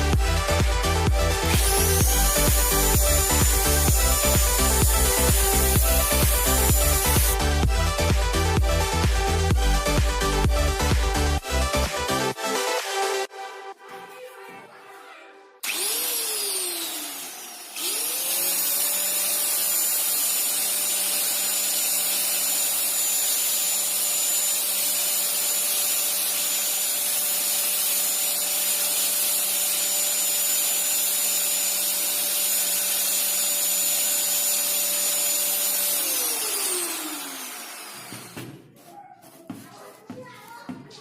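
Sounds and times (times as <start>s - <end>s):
grinder motor high whine: 0.0s - 7.8s, 15.6s - 38.4s.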